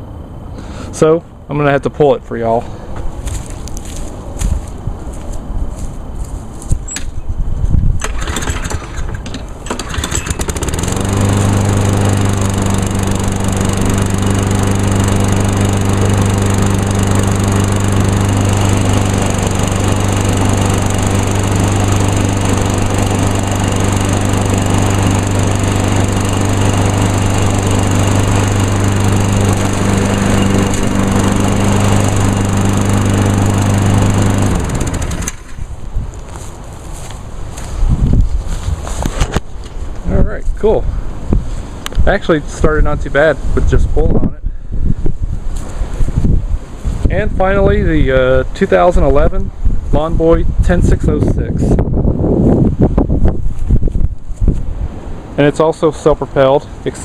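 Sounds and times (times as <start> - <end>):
lawn mower engine pull-started: 8.0 - 35.7.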